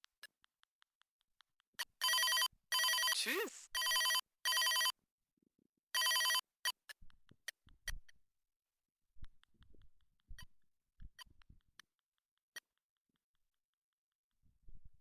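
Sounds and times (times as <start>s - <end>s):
toy telephone electronic ring: 6.0s - 6.4s.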